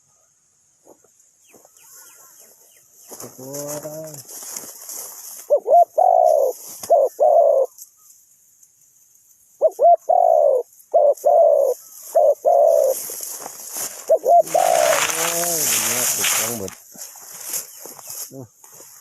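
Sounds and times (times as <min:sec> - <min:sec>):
dove cooing: 0:05.4 - 0:07.7, 0:09.6 - 0:13.2, 0:13.8 - 0:16.8.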